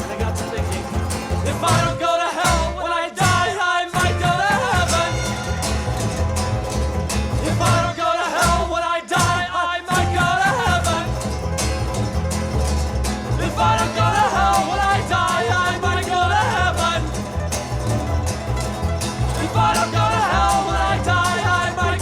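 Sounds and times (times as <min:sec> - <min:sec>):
instrumental song with drum beat: 0:00.0 - 0:12.4.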